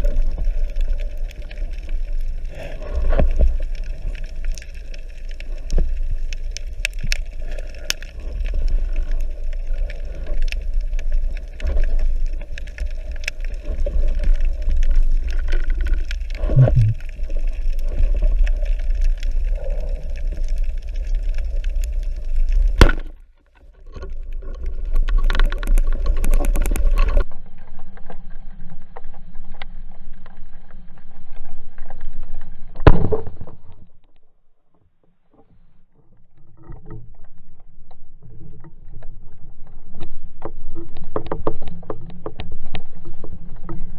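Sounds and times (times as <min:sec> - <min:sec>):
muffled underwater rumble: 0:00.0 - 0:34.7, 0:35.5 - 0:43.9
underwater clicks: 0:00.4 - 0:23.2, 0:23.8 - 0:27.2.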